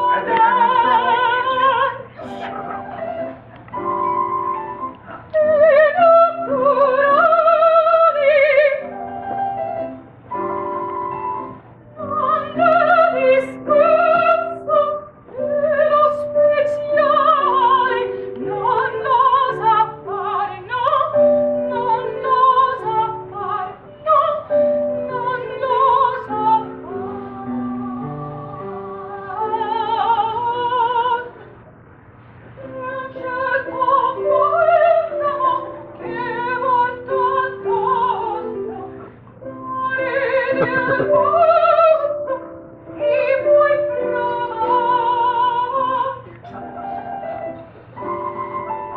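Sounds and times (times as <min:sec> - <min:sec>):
woman singing operatically: 0:00.0 - 0:02.6, 0:05.2 - 0:08.9, 0:12.0 - 0:31.4, 0:32.6 - 0:42.4, 0:43.0 - 0:46.2
piano accompaniment: 0:00.0 - 0:48.9.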